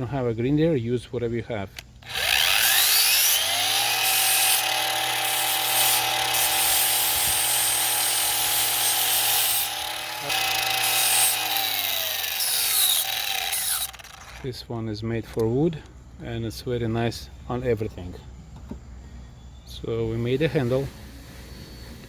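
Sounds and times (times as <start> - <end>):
electric grinder grinding metal: 2.0 - 14.5.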